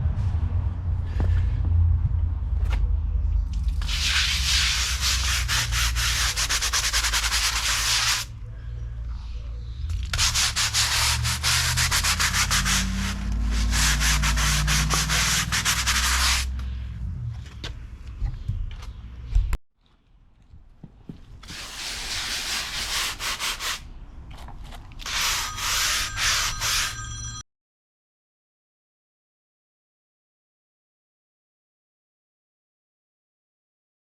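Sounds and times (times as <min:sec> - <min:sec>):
machine low rumble: 0:00.0 - 0:03.9
pressure washer spraying paving: 0:21.5 - 0:23.8.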